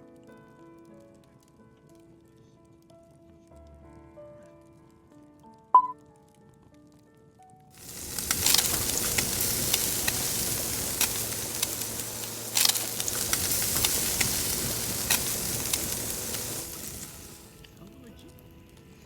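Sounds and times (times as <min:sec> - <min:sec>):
fat crackling and popping: 0:07.8 - 0:19.0
meat sizzling on a grill: 0:07.8 - 0:19.0.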